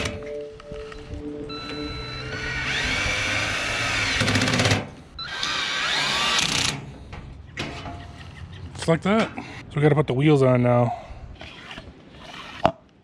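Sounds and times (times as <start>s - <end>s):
cordless drill whine: 1.0s - 7.0s.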